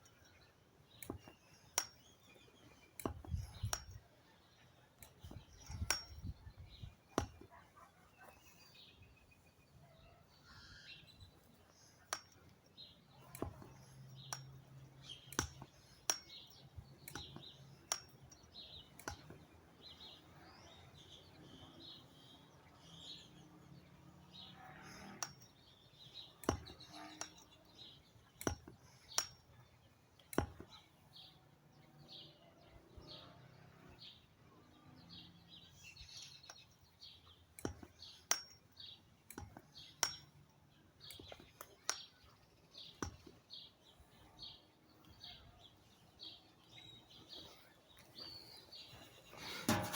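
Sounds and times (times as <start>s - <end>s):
birds chirping: 0.0s - 49.9s.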